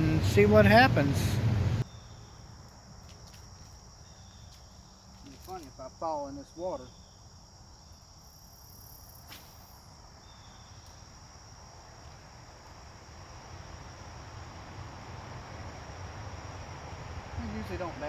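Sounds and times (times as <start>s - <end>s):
low rumble: 0.0s - 1.8s
insects trilling: 1.8s - 18.0s.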